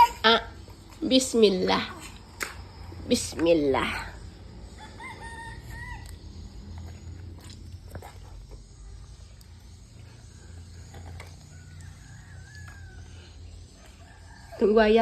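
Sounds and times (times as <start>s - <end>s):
distant chicken call: 4.7s - 6.5s.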